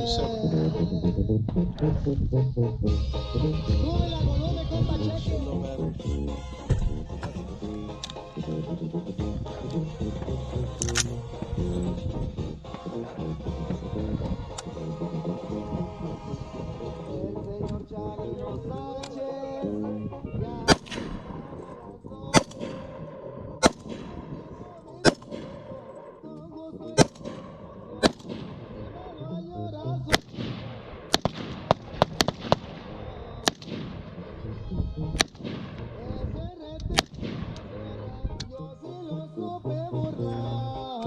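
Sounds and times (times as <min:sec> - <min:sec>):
rifle gunshots: 0:20.6 - 0:26.2, 0:26.9 - 0:29.2, 0:30.1 - 0:37.9.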